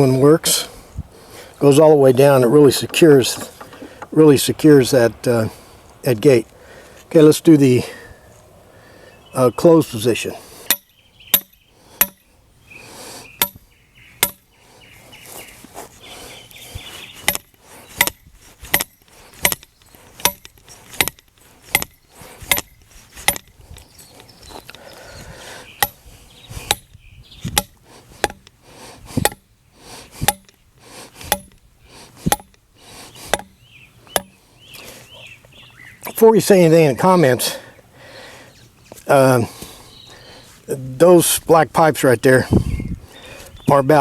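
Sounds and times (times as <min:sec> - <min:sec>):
hammer striking iron pipe: 0:10.7 - 0:12.3, 0:13.4 - 0:13.6, 0:14.2 - 0:14.5, 0:17.3 - 0:23.5, 0:27.6 - 0:28.5, 0:29.2 - 0:29.4, 0:30.3 - 0:30.5, 0:31.3 - 0:31.6, 0:32.3 - 0:32.6, 0:33.3 - 0:33.6, 0:34.2 - 0:34.4.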